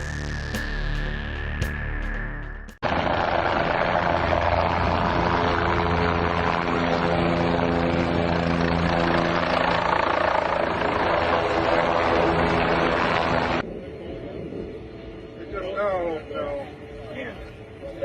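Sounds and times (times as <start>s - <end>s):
aircraft engine running loudly: 2.8s - 13.7s.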